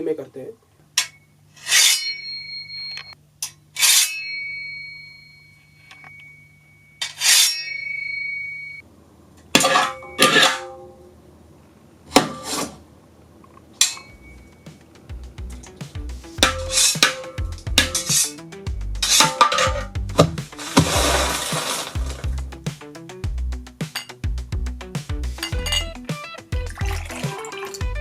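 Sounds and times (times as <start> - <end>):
ringing metal note: 1.1 - 3.2, 4.0 - 8.8, 13.8 - 14.8, 16.4 - 18.4
metal blades scraping and striking: 1.6 - 2.7, 3.8 - 4.4, 7.0 - 7.9, 16.4 - 18.4, 19.0 - 22.0.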